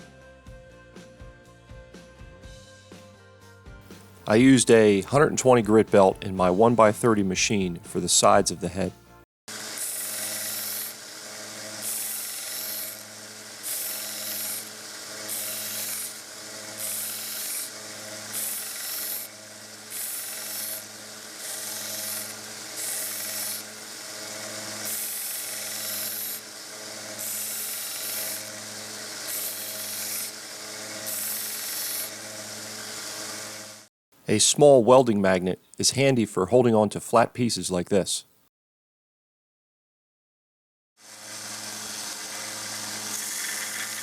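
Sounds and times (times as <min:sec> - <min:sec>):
belt sander motor humming: 0:09.5 - 0:33.9, 0:41.0 - 0:44.0
steel grinding on sanding belt: 0:09.5 - 0:33.9, 0:41.0 - 0:44.0.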